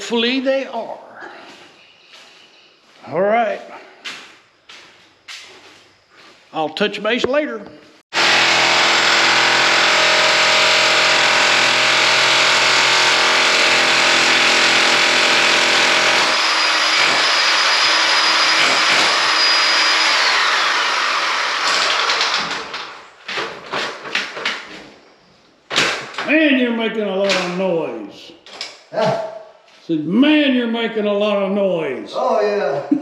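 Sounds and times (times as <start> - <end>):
motor-driven machine running: 8.2 - 22.2.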